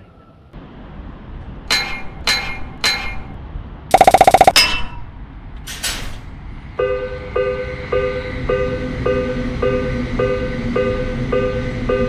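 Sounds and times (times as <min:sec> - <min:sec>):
electronic crossing alarm chiming: 0:01.7 - 0:04.6, 0:07.3 - 0:12.0
crossing bell dings: 0:01.7 - 0:05.1.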